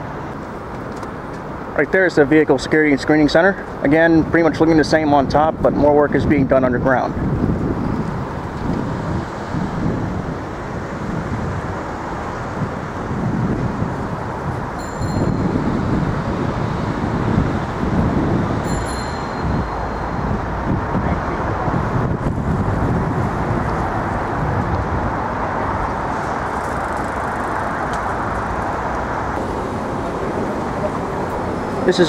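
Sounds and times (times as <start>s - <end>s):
city traffic rumble: 0.0s - 32.0s
high-pitched tones: 14.8s - 16.2s, 18.6s - 20.7s.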